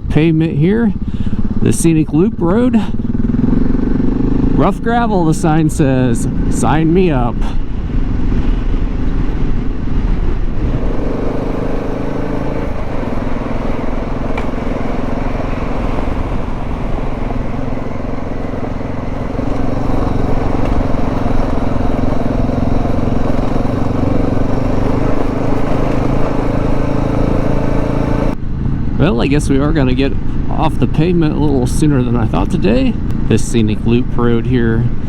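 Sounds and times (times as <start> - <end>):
motorcycle engine running: 0.0 - 28.9.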